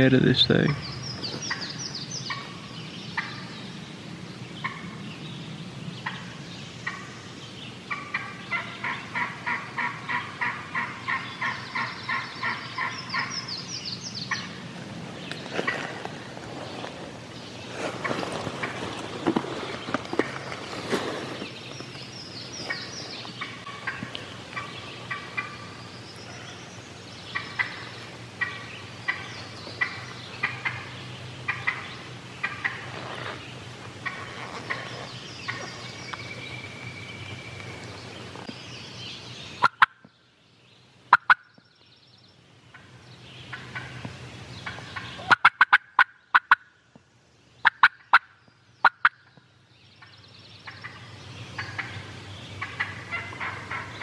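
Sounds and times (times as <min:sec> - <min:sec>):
turkey hen yelping: 0:07.9 - 0:13.4, 0:31.5 - 0:33.4, 0:39.6 - 0:40.0, 0:44.6 - 0:46.6, 0:47.6 - 0:49.2, 0:51.6 - 0:52.0, 0:52.6 - 0:54.0.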